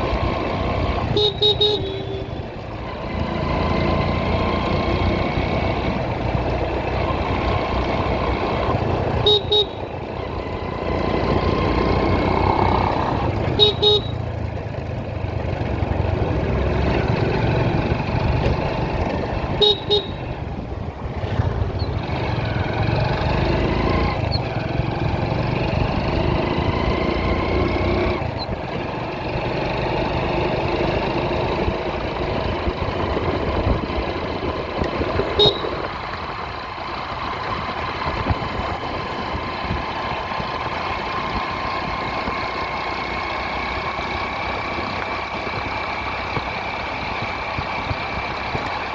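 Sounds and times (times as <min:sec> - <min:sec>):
motorcycle engine: 0:00.0 - 0:48.9
wind and road noise: 0:00.0 - 0:48.9
horn beeping: 0:01.0 - 0:02.5, 0:09.1 - 0:10.0, 0:13.4 - 0:14.3, 0:19.5 - 0:20.4, 0:35.2 - 0:35.9.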